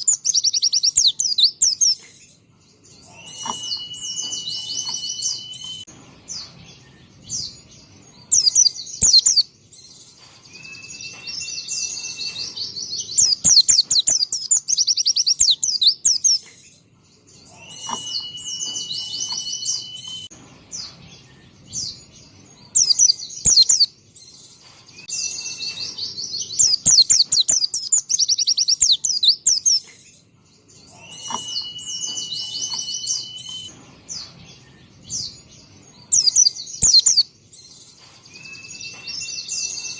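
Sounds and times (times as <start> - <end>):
bird whistling and trilling: 0.0 - 2.0, 3.1 - 5.9, 8.3 - 9.5, 10.5 - 16.4, 17.5 - 20.3, 22.7 - 23.9, 25.0 - 29.8, 30.9 - 33.7, 36.1 - 37.3.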